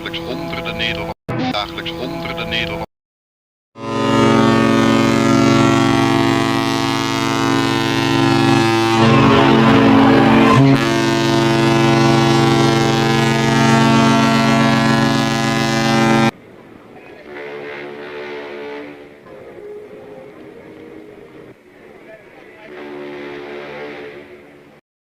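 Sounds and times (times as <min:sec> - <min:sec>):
deep ship's horn blast: 0:03.8 - 0:16.4, 0:17.2 - 0:21.6, 0:22.7 - 0:24.8.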